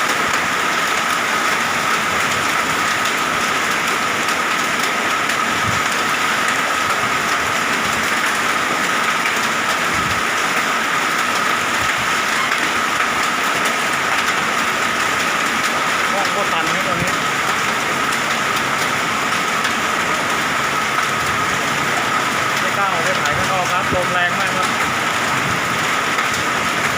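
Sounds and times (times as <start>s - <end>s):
hailstones ticking: 0.0s - 26.9s
heavy rain downpour: 0.0s - 26.9s
strong wind: 9.9s - 10.4s.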